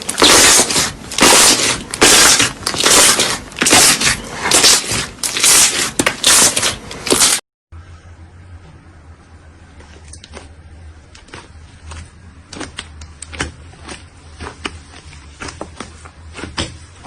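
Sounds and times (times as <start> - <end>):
slime squished by hand: 0.0 - 7.4.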